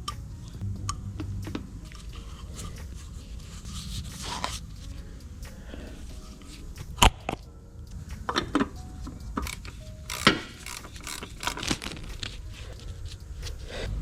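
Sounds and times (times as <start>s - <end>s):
hand tools and metal parts clinking: 8.3s - 13.6s.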